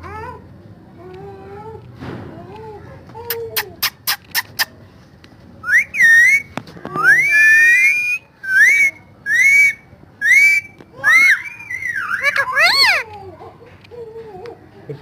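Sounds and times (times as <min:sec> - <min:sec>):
parrot whistling: 0:05.6 - 0:13.0.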